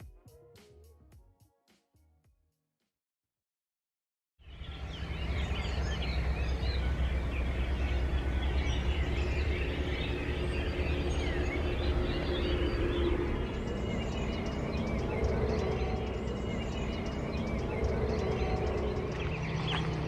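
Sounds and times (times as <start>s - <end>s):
birds chirping and singing: 4.4s - 20.0s
steady low rumble: 4.5s - 20.0s.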